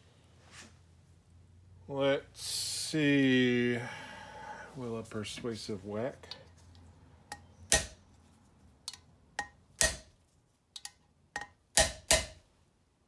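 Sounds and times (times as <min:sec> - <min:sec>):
hammer striking metal: 0:07.3 - 0:08.0, 0:08.9 - 0:10.1, 0:10.8 - 0:12.4.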